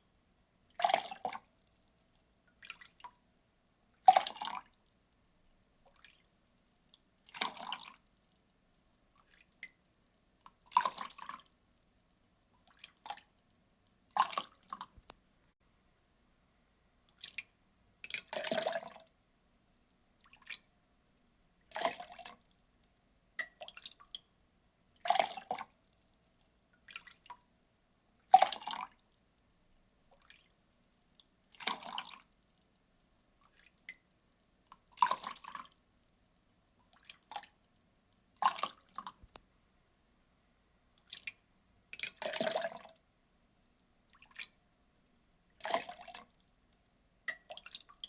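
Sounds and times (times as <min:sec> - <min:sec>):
faint water drips: 0:00.0 - 0:15.5, 0:16.4 - 0:39.4, 0:41.0 - 0:48.0
water pouring in splashes: 0:04.0 - 0:04.7, 0:10.6 - 0:11.5, 0:18.0 - 0:19.1, 0:21.7 - 0:22.4, 0:25.0 - 0:25.6, 0:28.3 - 0:29.0, 0:30.1 - 0:30.5, 0:31.5 - 0:32.2, 0:34.9 - 0:35.7, 0:42.0 - 0:42.9, 0:45.6 - 0:46.4.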